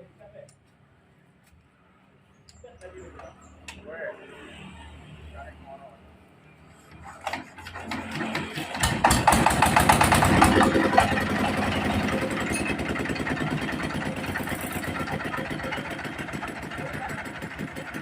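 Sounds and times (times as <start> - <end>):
diesel engine cranking and running: 7.0 - 18.0.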